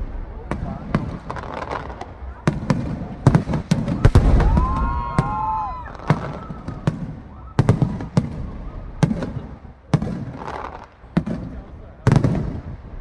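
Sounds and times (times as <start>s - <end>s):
low rumble: 0.0s - 1.0s
fireworks cracking and banging: 0.0s - 13.0s.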